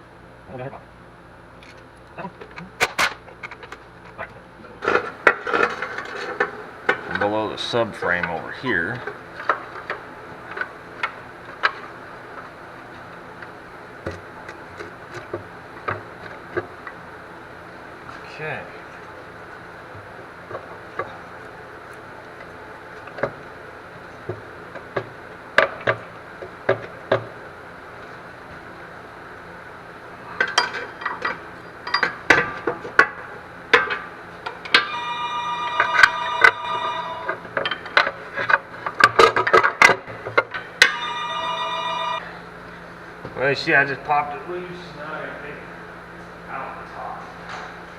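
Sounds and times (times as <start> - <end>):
ringing metallic tone: 34.7 - 37.5, 40.7 - 42.4.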